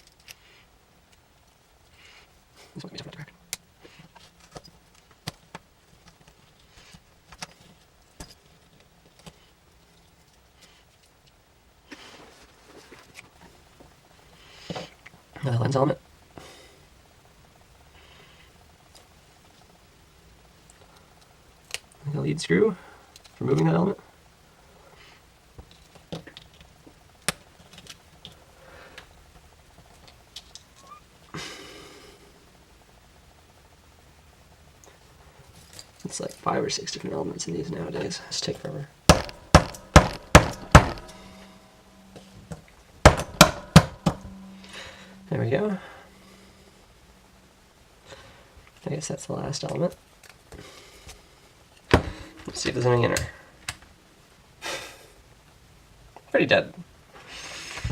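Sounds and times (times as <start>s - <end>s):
small parts clicking and tapping: 25.6s - 29.1s, 29.8s - 31.0s.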